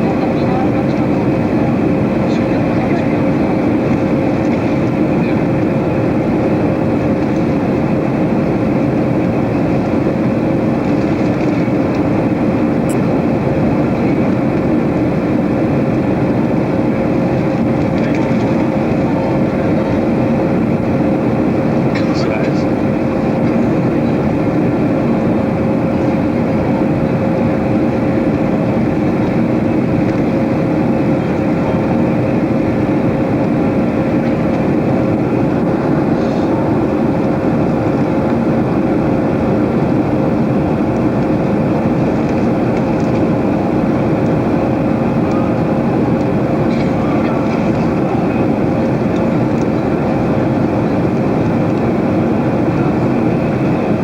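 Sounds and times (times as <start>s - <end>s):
jet airliner cabin roar: 0.0s - 54.0s.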